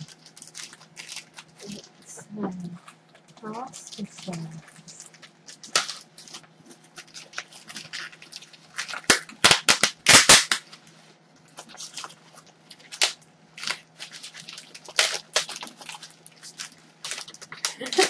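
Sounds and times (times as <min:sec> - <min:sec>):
plastic packaging crackling: 0:00.0 - 0:18.0
plastic rustling: 0:00.0 - 0:18.0.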